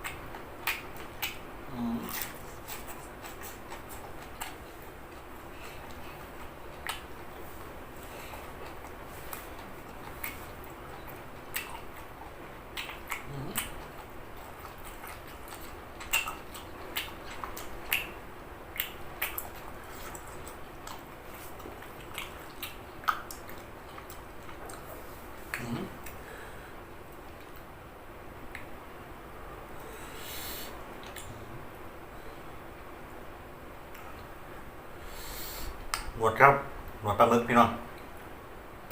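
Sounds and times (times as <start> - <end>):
wet mouth clicks and smacks: 0.0 - 1.4, 5.8 - 7.2, 8.6 - 24.9, 31.0 - 31.3, 35.8 - 36.2
person chewing: 0.0 - 26.5, 29.8 - 31.4.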